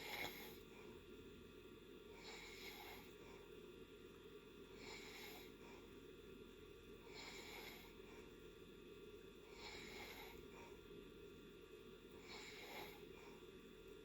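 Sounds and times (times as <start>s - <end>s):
person snoring faintly: 0.0s - 0.7s
low background hum: 0.0s - 14.0s.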